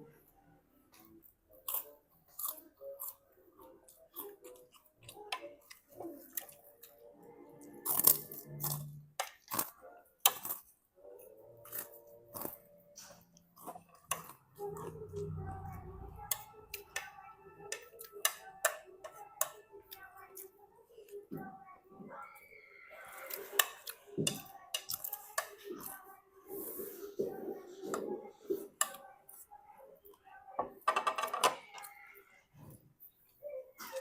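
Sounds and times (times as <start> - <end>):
kitchen utensils clicking and knocking: 30.8 - 31.8.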